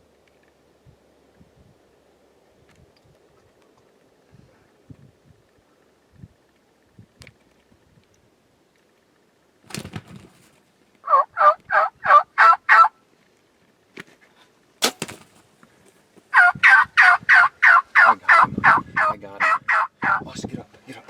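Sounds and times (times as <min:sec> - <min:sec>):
wild turkey calling: 0:11.0 - 0:13.0, 0:16.3 - 0:20.3
bow shot crack: 0:14.8 - 0:15.4.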